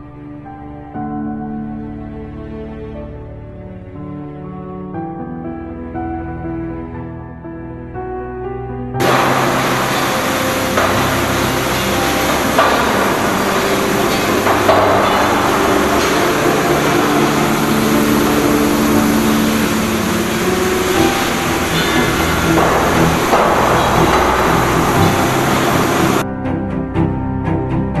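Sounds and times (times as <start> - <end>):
loud mechanical din: 9.0 - 26.2
motor hum: 9.0 - 26.2
sharp knocks: 9.0 - 26.2.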